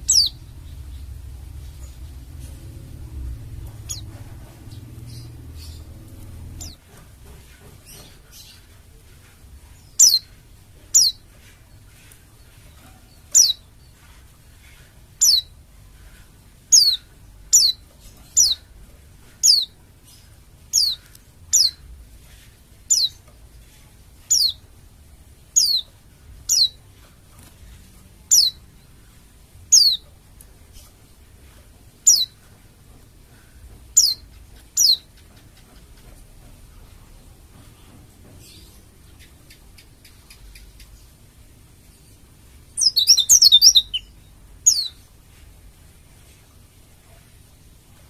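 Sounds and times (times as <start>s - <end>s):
bird giving high downward calls: 0.0s - 0.4s, 42.8s - 45.0s.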